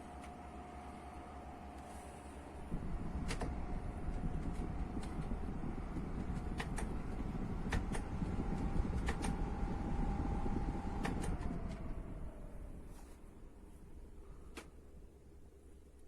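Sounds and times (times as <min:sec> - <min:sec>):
tower fan running: 0:00.0 - 0:16.0
sharp clicks: 0:06.3 - 0:07.0, 0:08.9 - 0:09.4.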